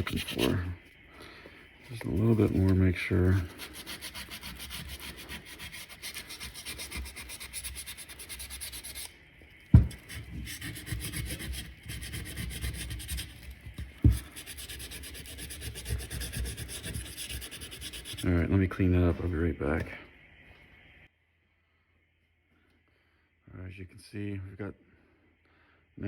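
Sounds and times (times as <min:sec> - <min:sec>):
sandpaper rubbing by hand: 0:00.0 - 0:00.8, 0:01.9 - 0:09.1, 0:09.8 - 0:18.5.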